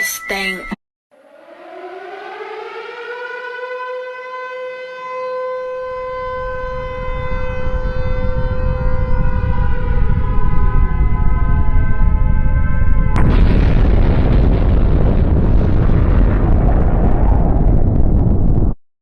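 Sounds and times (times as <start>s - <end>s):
siren wailing: 0.0s - 13.6s
deep rumbling noise: 6.0s - 18.8s.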